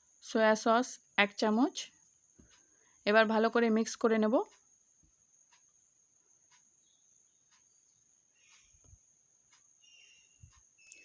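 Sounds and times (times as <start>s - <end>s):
soft ticks: 2.4s - 2.7s, 4.4s - 11.0s.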